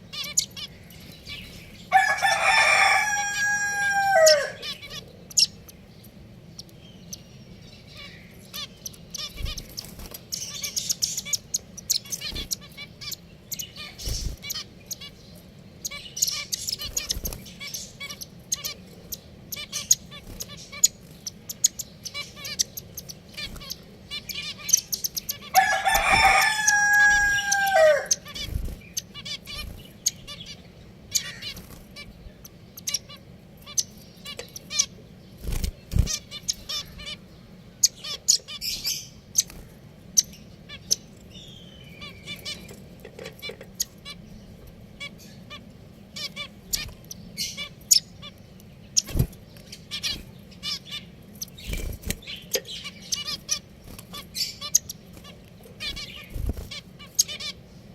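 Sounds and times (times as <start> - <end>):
finches chirping: 0.0 - 57.9
rooster crowing: 1.9 - 4.7, 25.5 - 28.3.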